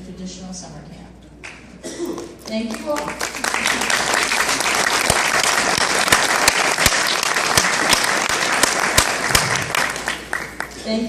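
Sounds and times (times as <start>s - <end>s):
loud nearby claps: 1.4s - 10.8s
audience applauding: 2.2s - 10.8s.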